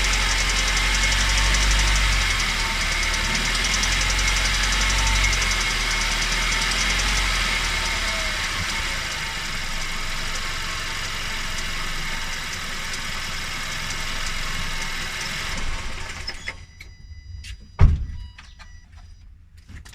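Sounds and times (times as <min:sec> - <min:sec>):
car engine running: 0:00.0 - 0:19.4
loud thump: 0:17.1 - 0:18.4.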